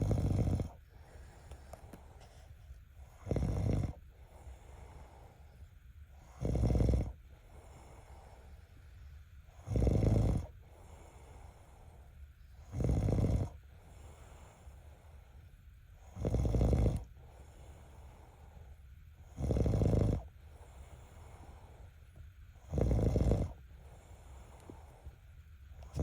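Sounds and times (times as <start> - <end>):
person snoring: 0.0 - 0.8, 3.2 - 4.0, 6.3 - 7.9, 9.6 - 10.5, 12.7 - 13.6, 16.1 - 17.1, 19.3 - 20.3, 22.6 - 23.6.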